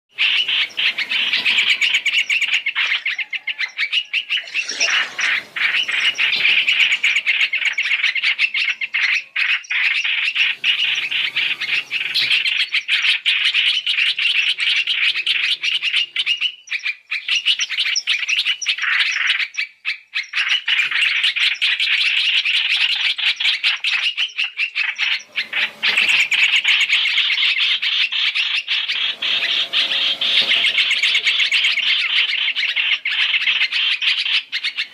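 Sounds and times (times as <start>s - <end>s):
rapid bird chattering: 0.1s - 34.9s.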